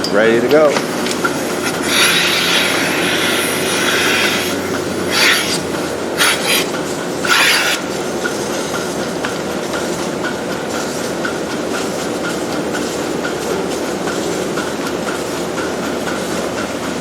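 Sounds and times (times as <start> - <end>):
milking system running: 0.0 - 17.0
air hissing into teat cups: 1.4 - 7.8.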